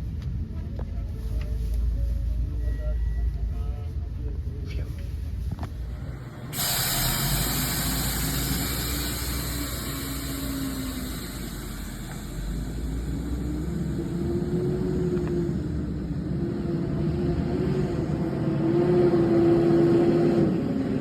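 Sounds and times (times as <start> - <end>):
engine running: 5.4 - 21.0
loud steady hiss: 5.7 - 16.1.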